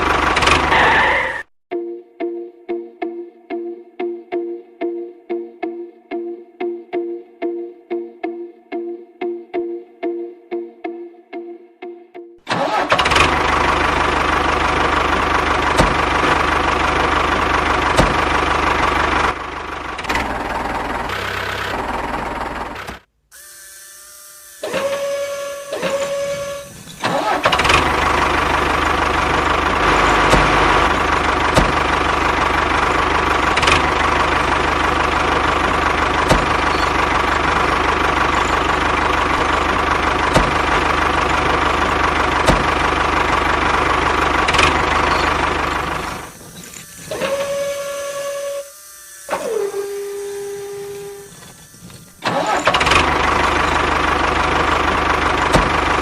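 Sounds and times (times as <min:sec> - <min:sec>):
small motor whining: 0:12.6 - 0:56.0
brief steady tones: 0:46.0 - 0:52.5.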